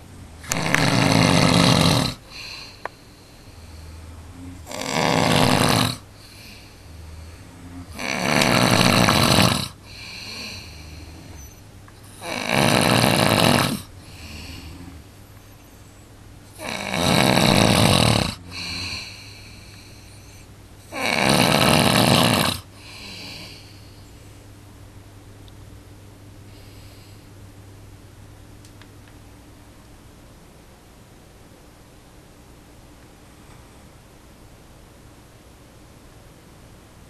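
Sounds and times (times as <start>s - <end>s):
man snoring: 0.1s - 15.2s, 16.5s - 20.2s, 20.9s - 23.7s
soft breathing: 2.1s - 12.2s, 13.8s - 16.7s, 18.4s - 20.9s, 22.7s - 24.6s, 26.4s - 27.5s.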